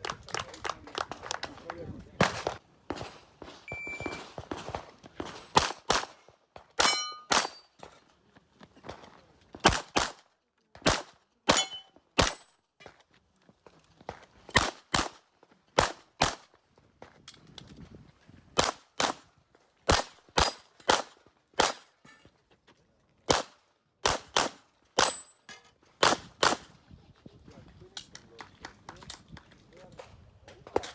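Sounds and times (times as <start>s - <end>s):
handgun shots: 6.8s - 7.6s.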